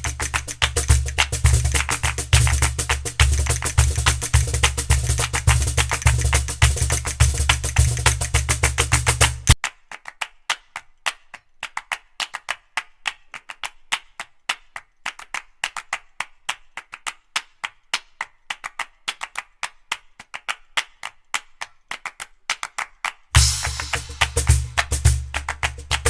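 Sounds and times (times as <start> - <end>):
rapid sharp clicks and knocks: 0.0 - 9.6, 23.4 - 26.0.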